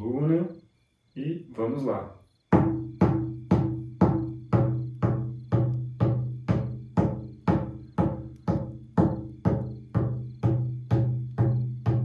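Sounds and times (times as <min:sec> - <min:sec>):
frame drum beaten: 0:02.5 - 0:12.0.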